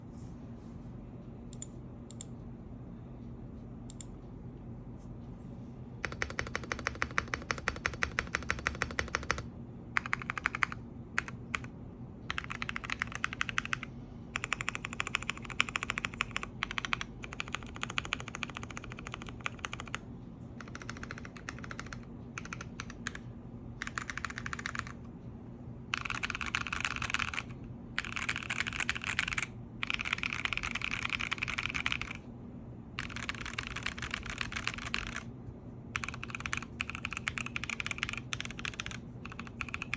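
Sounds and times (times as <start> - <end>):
mechanical keyboard typing: 6.0 - 11.7, 12.3 - 20.0, 20.6 - 23.2, 23.8 - 25.0, 25.9 - 32.2, 33.0 - 35.3, 36.0 - 39.9.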